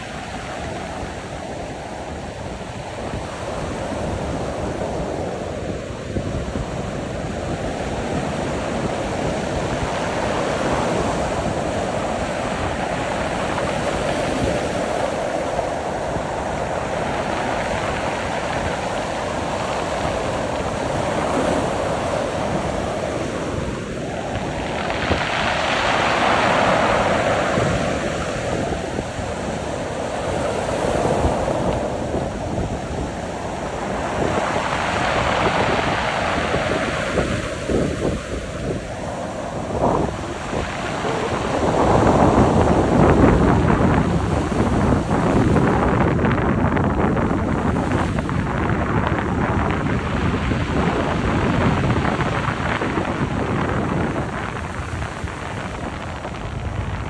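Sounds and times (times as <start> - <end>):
waves breaking: 0.0 - 57.0.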